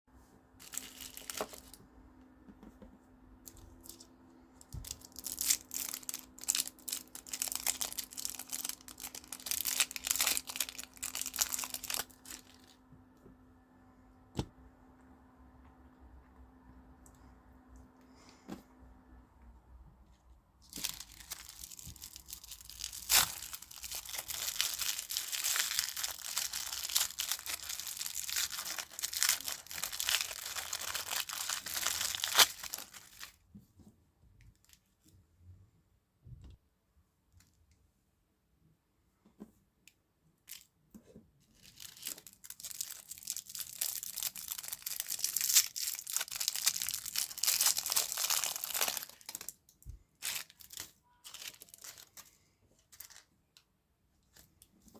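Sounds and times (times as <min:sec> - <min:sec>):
plastic wrappers crinkling: 0:00.6 - 0:01.8, 0:03.4 - 0:12.9, 0:20.6 - 0:33.4, 0:41.5 - 0:53.3.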